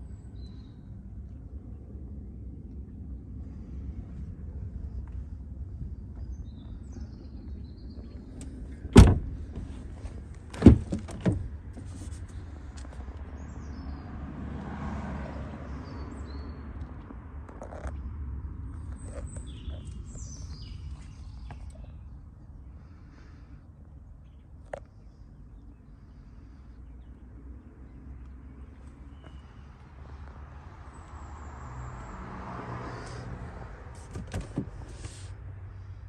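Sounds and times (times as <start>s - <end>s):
low steady rumble: 0.0s - 10.6s
birds chirping: 4.5s - 9.3s, 18.0s - 31.4s
car doors shutting: 8.4s - 9.8s, 10.4s - 11.5s, 34.0s - 35.3s.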